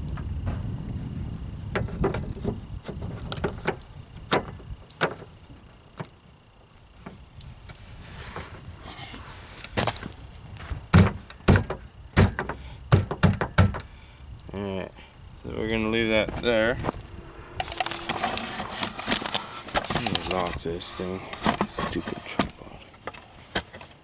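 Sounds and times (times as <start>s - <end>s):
heavy thumps: 0.2s - 2.7s, 10.9s - 14.1s, 15.9s - 20.1s.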